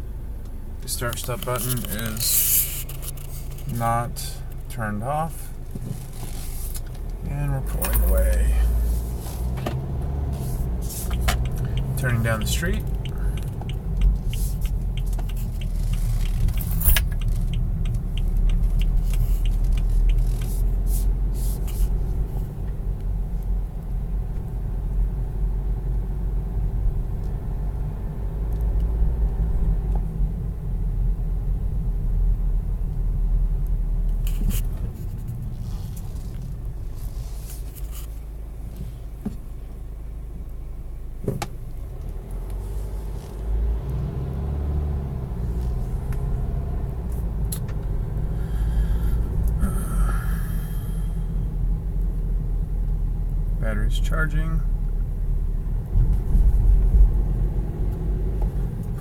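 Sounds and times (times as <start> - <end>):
car engine and road noise: 0.0 - 59.0
light clicks and rattles: 10.8 - 21.0.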